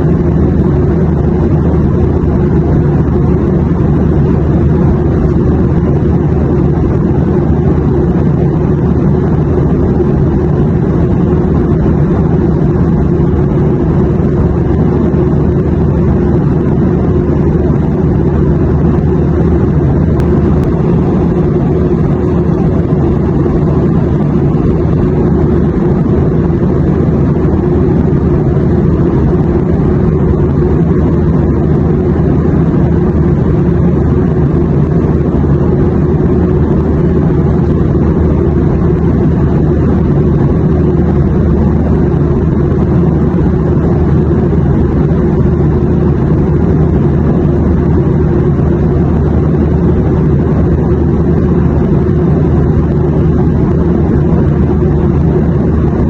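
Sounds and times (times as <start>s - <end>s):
airplane drone in flight: 0.0s - 56.0s.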